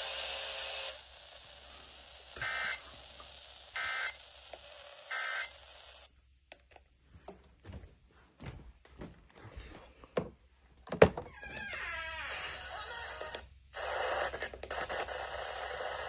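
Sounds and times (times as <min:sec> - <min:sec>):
steady hiss: 0:00.0 - 0:06.1.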